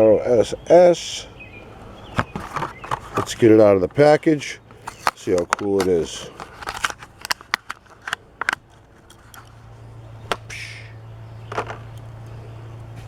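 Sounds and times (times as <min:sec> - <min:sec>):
low steady hum: 0:00.0 - 0:13.0
plastic packaging crackling: 0:02.2 - 0:09.6.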